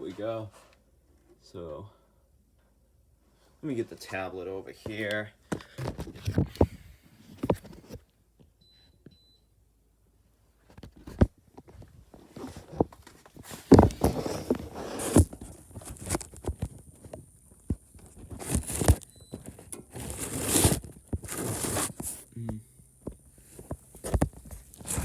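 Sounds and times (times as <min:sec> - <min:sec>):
knocks and clicks of handling: 0:10.7 - 0:25.0
rustling: 0:10.7 - 0:25.0.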